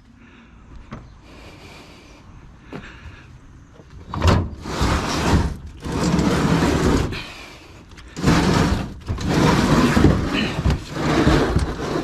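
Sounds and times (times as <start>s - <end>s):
dishwasher scraping across floor: 4.5s - 7.3s, 8.2s - 12.0s.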